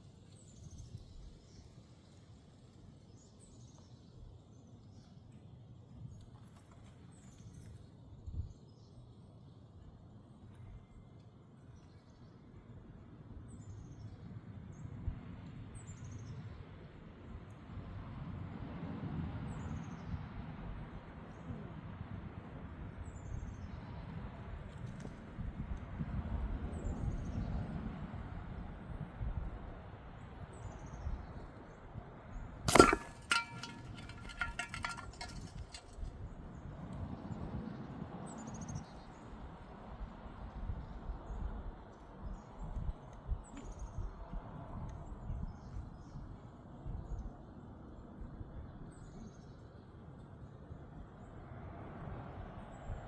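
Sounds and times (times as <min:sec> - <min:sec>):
light metallic clinks and rattles: 0:32.7 - 0:36.1.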